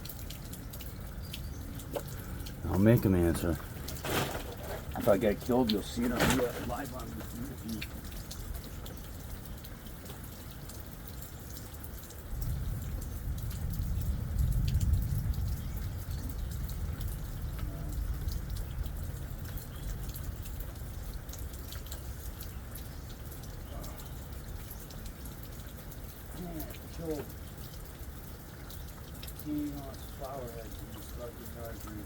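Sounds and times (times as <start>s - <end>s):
rain dripping: 0.0s - 32.0s
low rumble of thunder: 12.2s - 25.3s.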